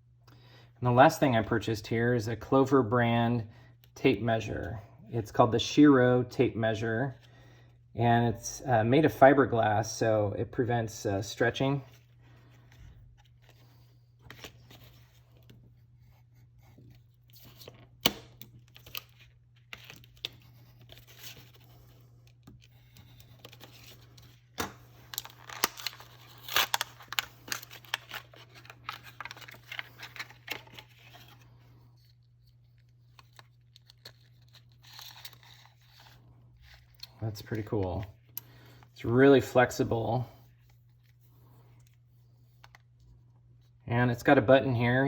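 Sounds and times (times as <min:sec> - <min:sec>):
packaging tearing and crinkling: 0:22.6 - 0:31.6, 0:32.7 - 0:37.6.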